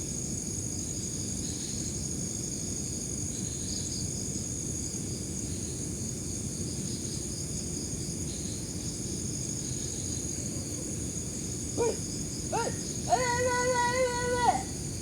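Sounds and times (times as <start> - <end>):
crickets chirring: 8.3 - 15.0.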